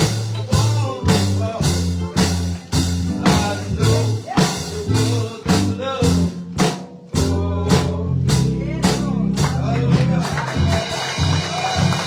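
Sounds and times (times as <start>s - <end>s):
drum hits: 0.0s - 12.0s
guitar: 0.0s - 12.0s
held bass notes: 0.0s - 12.0s
live gospel band music: 0.0s - 12.0s.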